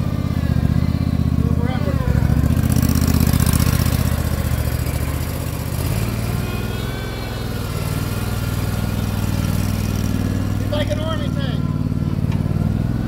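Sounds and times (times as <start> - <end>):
mower engine running: 0.0 - 13.0.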